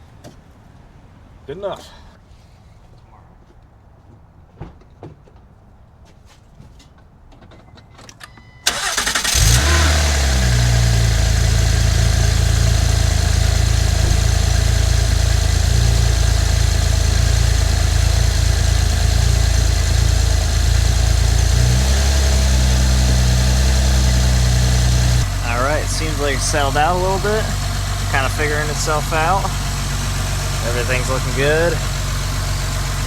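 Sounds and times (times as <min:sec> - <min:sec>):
car engine idling: 0:08.6 - 0:33.0
starter cranking: 0:08.7 - 0:33.0.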